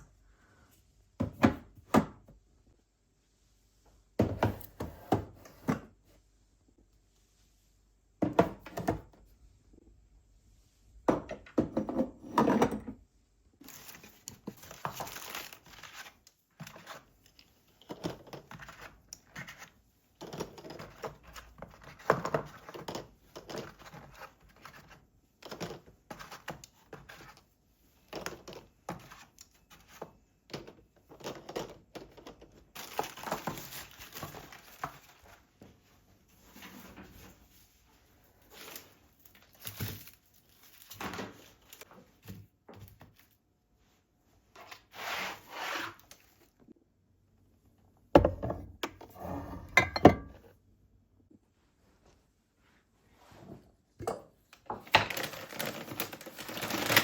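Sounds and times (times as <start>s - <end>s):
objects knocking and thunking: 1.1s - 2.4s, 4.2s - 6.0s, 8.2s - 9.2s, 11.0s - 13.0s, 48.2s - 50.6s
rustling and crinkling: 13.6s - 30.2s, 31.1s - 45.2s, 54.8s - 57.0s.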